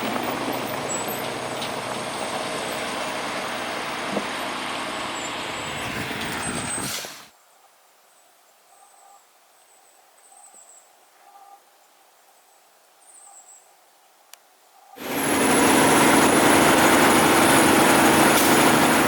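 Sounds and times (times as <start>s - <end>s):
truck engine and road noise: 0.0s - 7.3s, 15.0s - 19.0s.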